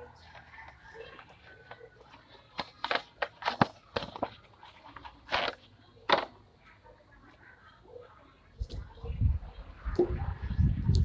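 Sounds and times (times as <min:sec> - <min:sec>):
filters rustling and knocking: 0:00.4 - 0:06.4.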